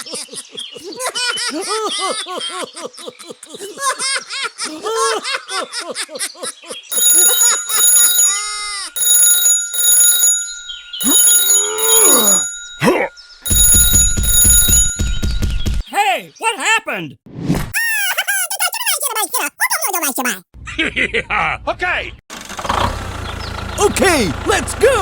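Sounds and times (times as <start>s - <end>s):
bell-like alarm ringing: 6.9s - 15.8s.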